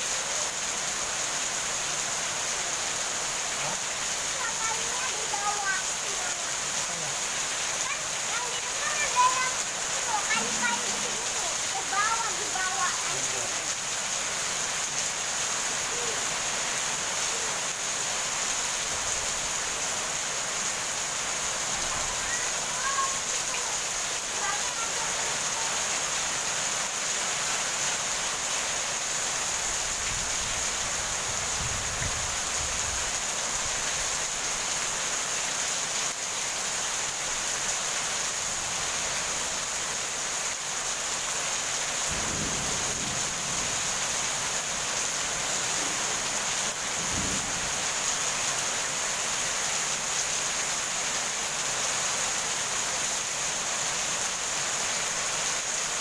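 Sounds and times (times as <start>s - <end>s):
heavy rain falling: 0.0s - 56.0s
thunder rumbles: 42.0s - 48.2s.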